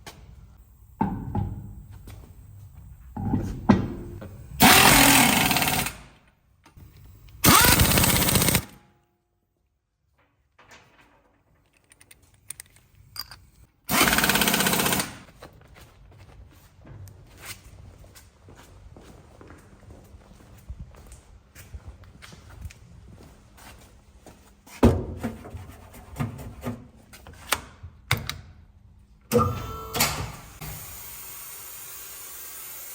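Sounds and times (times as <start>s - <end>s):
impact wrench hammering: 1.0s - 1.8s, 3.2s - 6.1s, 7.4s - 8.8s
small clicks and knocks: 10.2s - 13.7s.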